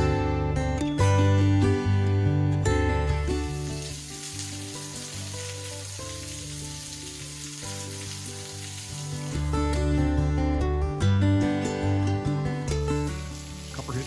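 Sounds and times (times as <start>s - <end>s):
acoustic guitar music: 0.0s - 14.0s
waterfall splattering: 3.4s - 9.6s, 13.0s - 14.0s.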